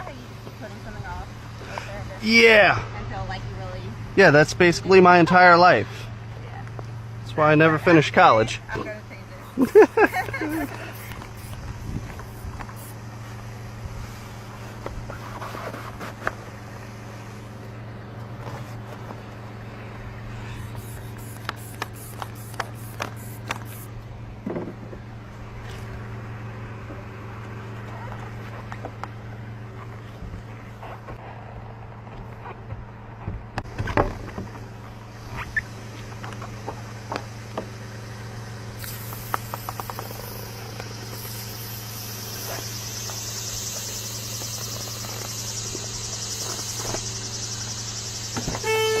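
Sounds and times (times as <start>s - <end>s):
low vehicle hum: 0.0s - 49.0s
high fine hiss: 9.5s - 13.4s, 20.4s - 23.9s, 38.7s - 49.0s.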